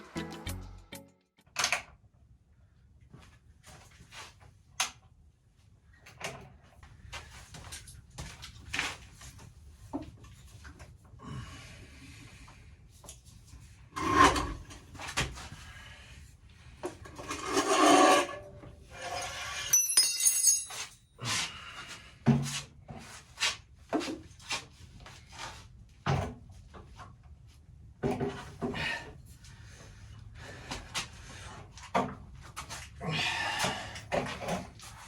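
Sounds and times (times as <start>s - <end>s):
metallic clink: 19.6s - 21.0s.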